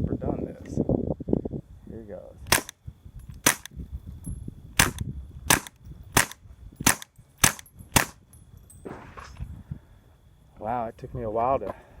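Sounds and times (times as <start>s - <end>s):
suppressed pistol shots: 2.5s - 2.8s, 3.4s - 3.7s, 4.8s - 8.2s.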